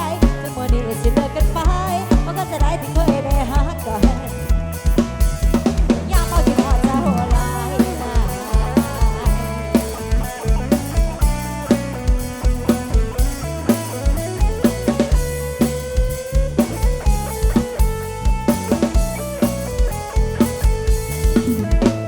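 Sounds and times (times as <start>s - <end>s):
drum kit with heavy kick drum: 0.0s - 22.0s
electric guitar melody: 0.0s - 22.0s.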